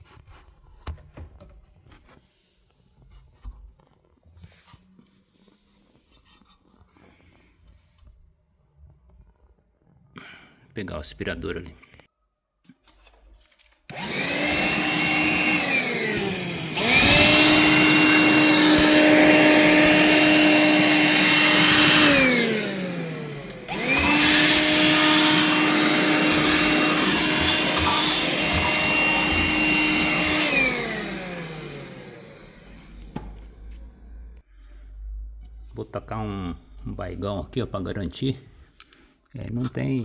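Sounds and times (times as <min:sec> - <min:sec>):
vacuum cleaner motor whine: 0:13.9 - 0:34.5.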